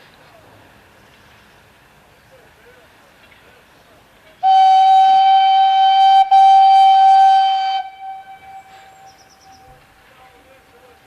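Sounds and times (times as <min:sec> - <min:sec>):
steam locomotive whistle: 0:04.4 - 0:09.7.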